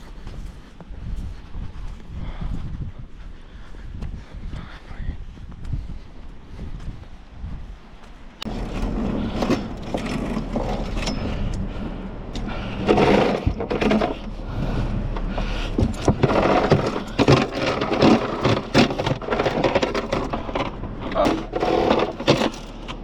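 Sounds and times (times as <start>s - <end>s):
boat engine humming: 7.8s - 23.0s
clattering knocks: 15.2s - 23.0s.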